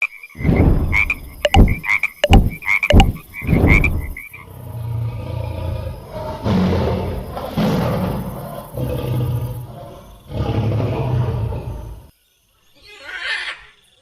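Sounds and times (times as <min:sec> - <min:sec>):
croaking animal calls: 0:00.0 - 0:12.1
sharp clicks: 0:01.1 - 0:04.2.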